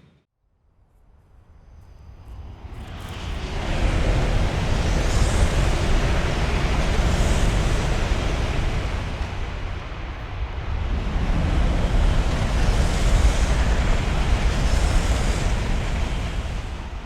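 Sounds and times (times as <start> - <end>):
rushing roar with deep rumble: 10.6 - 17.0.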